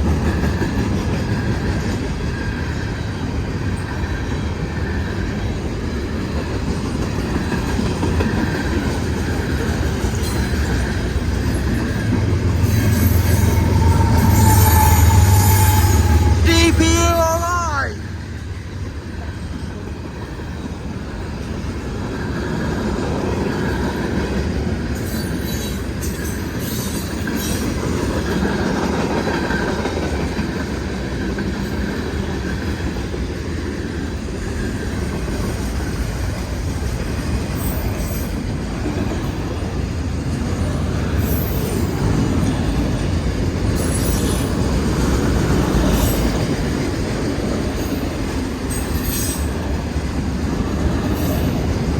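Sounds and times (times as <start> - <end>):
freight train cars rolling past: 0.0 - 51.9
high wheel squeals: 10.2 - 16.5.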